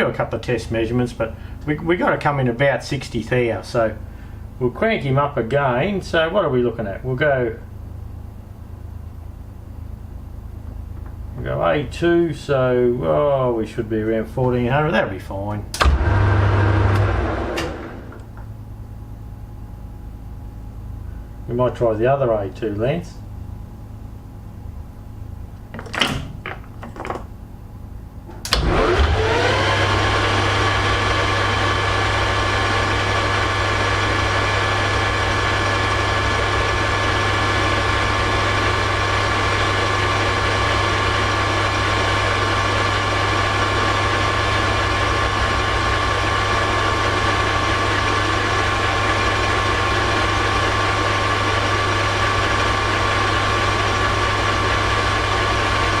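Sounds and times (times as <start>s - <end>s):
lathe motor humming: 15.8s - 18.3s, 28.4s - 56.0s.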